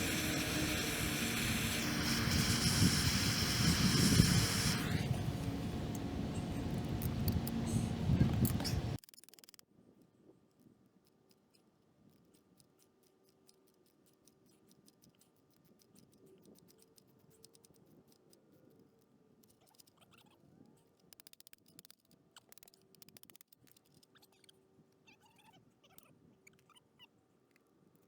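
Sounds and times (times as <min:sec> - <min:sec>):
low steady hum: 0:00.0 - 0:09.0
small scratchy sounds: 0:00.0 - 0:28.0.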